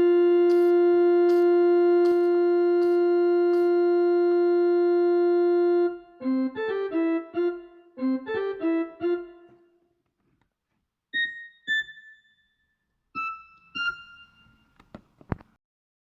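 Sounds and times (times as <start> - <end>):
electric piano ringtone melody: 0.0 - 9.7, 13.2 - 14.7.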